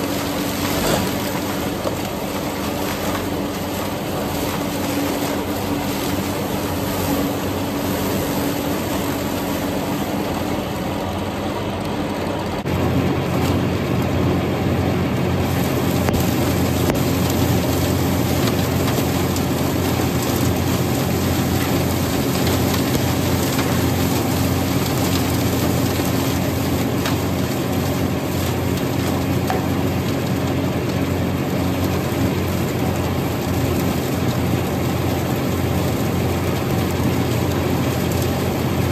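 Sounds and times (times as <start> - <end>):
heavy low hum: 0.0 - 29.8
flail chopper cutting corn stalks: 0.0 - 38.9
tractor engine running: 0.0 - 38.9.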